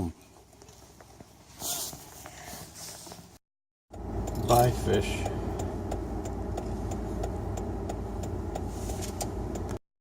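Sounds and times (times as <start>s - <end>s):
car engine rumbling: 0.0s - 9.8s
light ticks: 4.2s - 9.8s.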